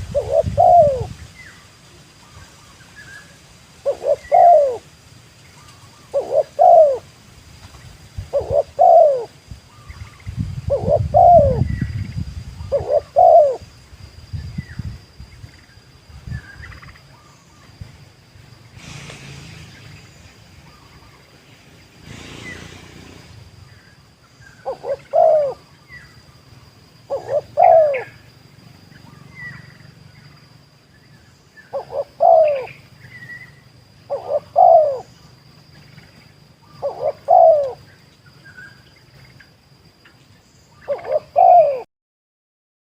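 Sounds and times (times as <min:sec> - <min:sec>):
dove cooing: 0:00.0 - 0:01.2, 0:03.8 - 0:04.9, 0:05.6 - 0:07.1, 0:08.3 - 0:09.4, 0:10.7 - 0:11.8, 0:12.6 - 0:13.6, 0:24.5 - 0:26.0, 0:27.1 - 0:28.3, 0:31.7 - 0:35.2, 0:36.6 - 0:38.0, 0:40.9 - 0:41.9.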